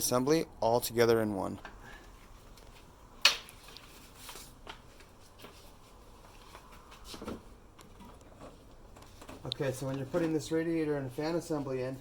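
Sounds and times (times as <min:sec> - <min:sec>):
faint clicks and rustles: 0:01.6 - 0:10.8.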